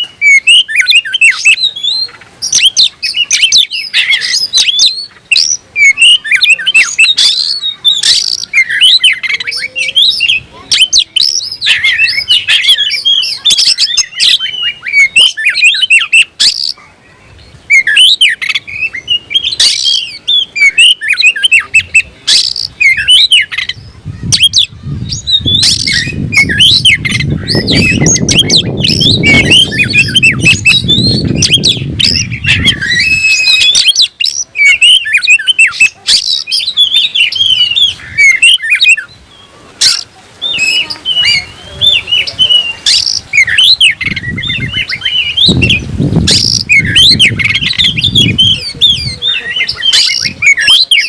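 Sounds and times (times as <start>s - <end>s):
bird singing: 0.0s - 51.0s.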